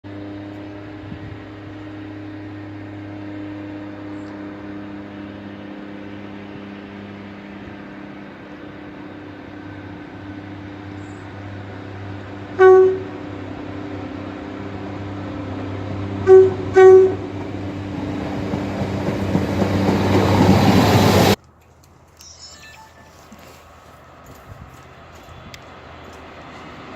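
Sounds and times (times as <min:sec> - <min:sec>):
approaching train rumble: 0:00.0 - 0:21.4, 0:22.7 - 0:26.9
train engine drone: 0:00.0 - 0:26.9
train horn toots: 0:12.5 - 0:13.3, 0:16.2 - 0:17.3.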